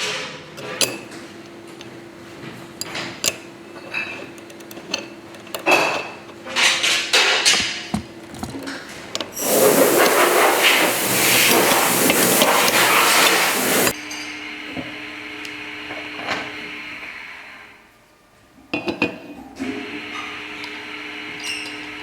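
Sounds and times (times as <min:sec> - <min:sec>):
loud rushing rasping tool noise: 0:09.4 - 0:14.0.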